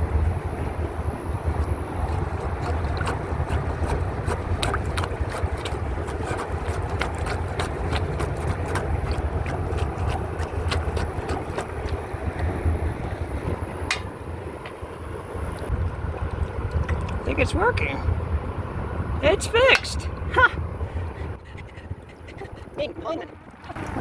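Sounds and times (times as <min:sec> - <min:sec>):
wind buffeting microphone: 0:00.0 - 0:24.0
plunger splashing in water: 0:02.0 - 0:12.1.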